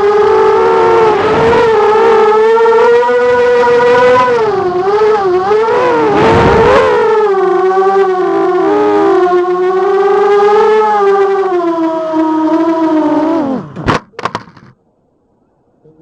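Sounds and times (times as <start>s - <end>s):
quadcopter motors whining: 0.0s - 13.9s.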